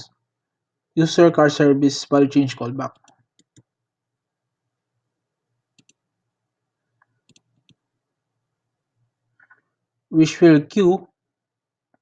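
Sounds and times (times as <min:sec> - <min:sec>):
computer mouse clicks: 0:02.9 - 0:03.7, 0:05.7 - 0:06.0, 0:07.0 - 0:07.8.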